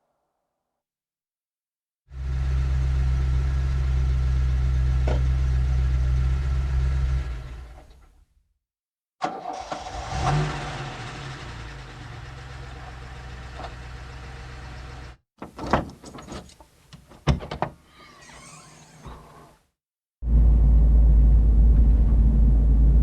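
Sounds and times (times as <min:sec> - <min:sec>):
car engine starting and idling: 0:09.2 - 0:15.2.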